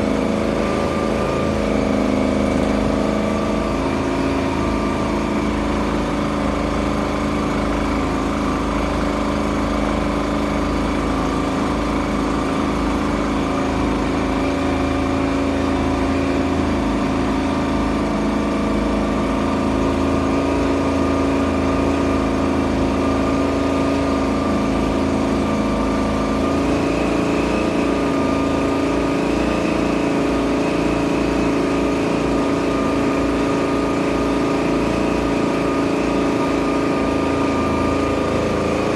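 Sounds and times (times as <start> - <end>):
boat engine running: 0.0 - 38.9.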